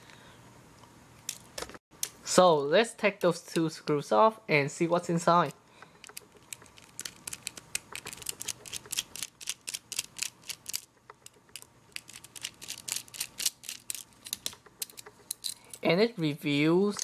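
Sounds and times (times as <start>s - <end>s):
screwdriver clicking and ticking: 6.0s - 15.5s.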